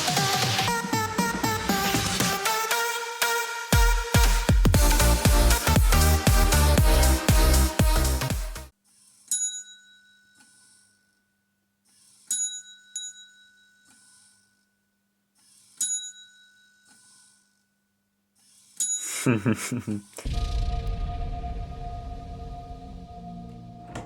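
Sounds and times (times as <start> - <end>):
small bell dinging: 9.3 - 10.5, 12.3 - 13.9, 15.8 - 16.9.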